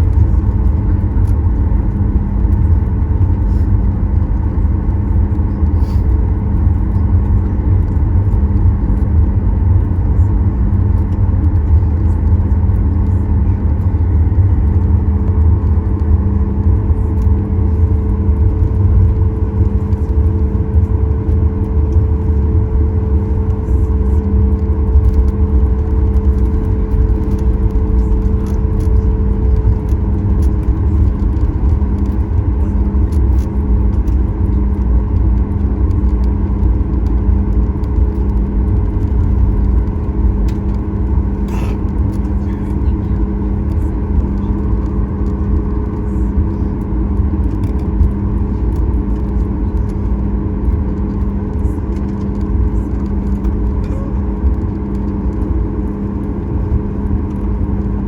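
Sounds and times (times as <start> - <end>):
aircraft cabin rumble: 0.0 - 58.0
jet engines humming at idle: 0.0 - 58.0.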